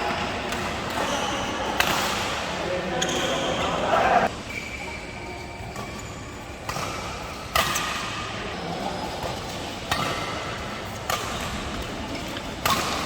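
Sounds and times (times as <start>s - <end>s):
racket hitting shuttlecock: 0.4s - 3.3s, 6.6s - 8.3s, 9.2s - 13.0s.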